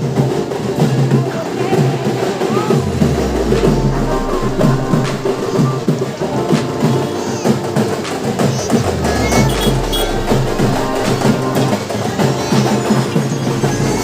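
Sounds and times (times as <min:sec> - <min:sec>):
steady percussion beat: 0:02.5 - 0:06.2, 0:08.1 - 0:14.0
low bass swells: 0:02.7 - 0:06.0, 0:08.7 - 0:12.2.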